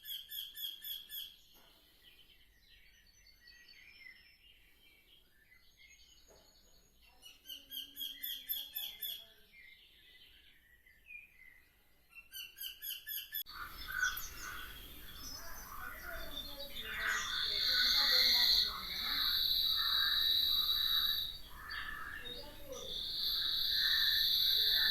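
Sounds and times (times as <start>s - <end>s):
songbirds chirping: 0.0s - 24.9s
other bird calls: 13.2s - 24.9s.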